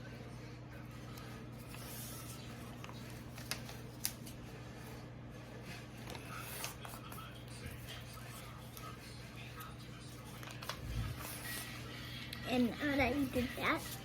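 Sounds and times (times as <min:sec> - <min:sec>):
paper rustling: 0:01.1 - 0:14.0
paper snapping crisply: 0:02.8 - 0:04.4.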